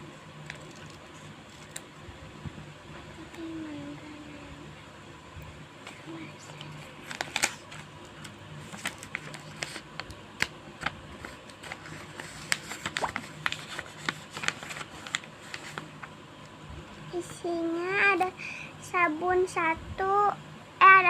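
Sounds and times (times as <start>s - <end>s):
package being opened by hand: 7.0s - 15.9s.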